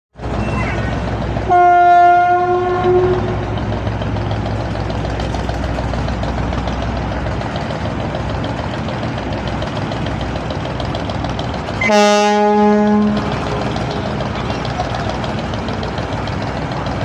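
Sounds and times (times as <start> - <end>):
low engine rumble: 0.2 - 17.0
boat horn blast: 1.5 - 3.5, 11.8 - 13.4.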